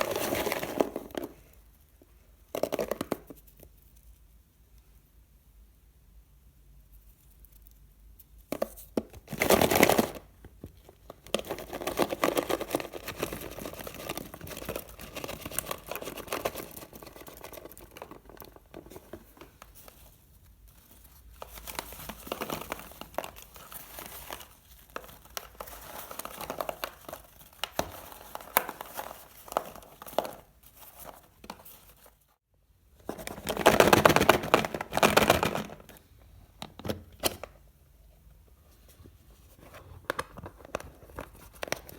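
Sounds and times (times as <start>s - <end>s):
plastic packaging crinkling: 11.0s - 20.0s, 20.6s - 32.3s, 33.1s - 36.0s.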